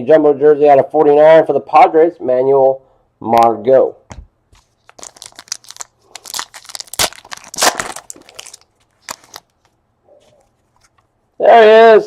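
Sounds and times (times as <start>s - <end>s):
plastic wrapper crinkling: 4.5s - 11.1s.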